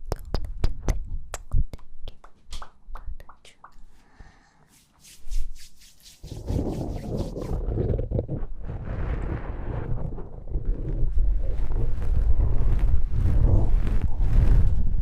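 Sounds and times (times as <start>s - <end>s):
soft lip smacks and mouth clicks: 0.0s - 3.9s
breathing onto microphone: 3.9s - 4.8s.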